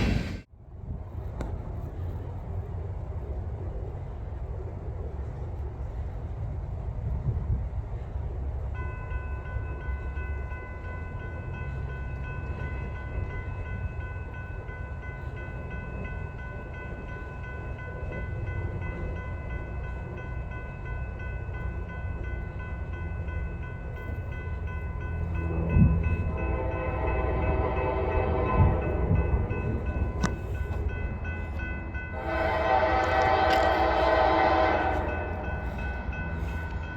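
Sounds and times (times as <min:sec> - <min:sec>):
train rumble: 0:00.0 - 0:36.9
crossing bell ringing: 0:08.6 - 0:36.9
locomotive horn: 0:25.6 - 0:30.3, 0:32.1 - 0:36.1.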